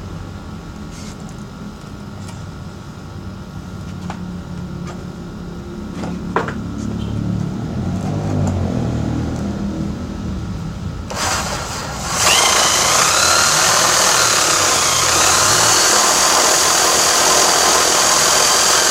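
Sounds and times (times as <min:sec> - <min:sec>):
drill-driven drum sander running: 0:11.0 - 0:18.9.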